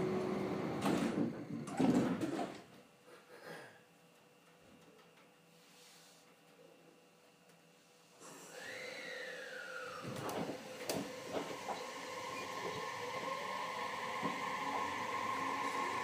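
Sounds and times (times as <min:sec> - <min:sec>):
electric train motor whine: 0:00.0 - 0:01.7, 0:08.2 - 0:16.0.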